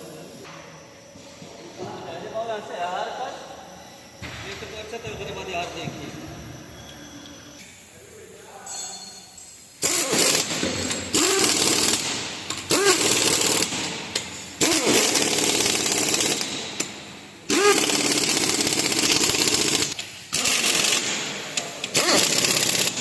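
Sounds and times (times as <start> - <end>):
pneumatic impact wrench hammering: 9.8 - 23.0.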